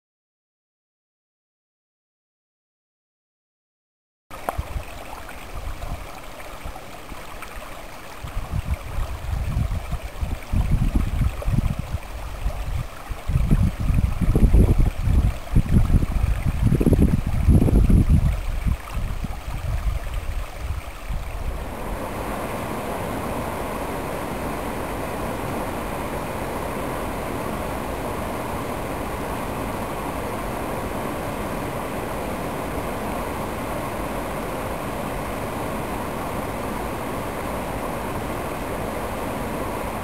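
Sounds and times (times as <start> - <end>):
stream water running: 4.3 - 40.0
wind buffeting microphone: 8.2 - 40.0.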